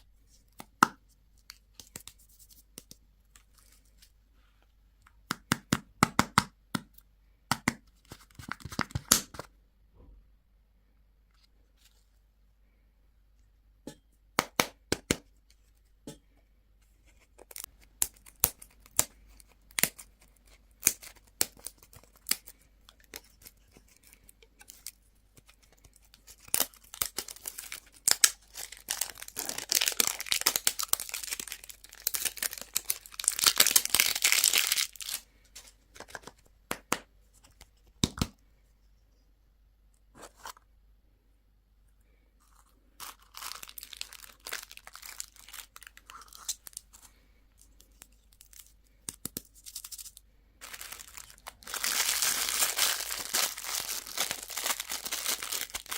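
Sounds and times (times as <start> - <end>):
wrapper tearing and crinkling: 25.9 - 35.2, 43.0 - 46.8, 49.5 - 55.9.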